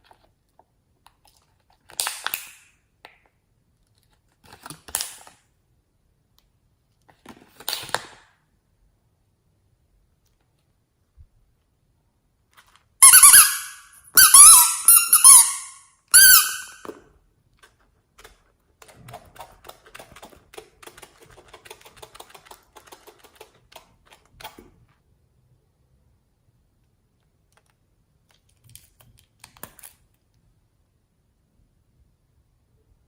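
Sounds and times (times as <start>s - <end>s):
loud pitch-bending squeaks: 13.0s - 16.8s.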